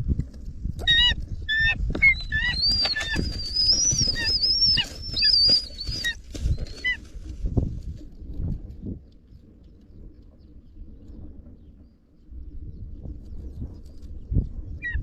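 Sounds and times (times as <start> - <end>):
eagle calling: 0.8 - 7.1.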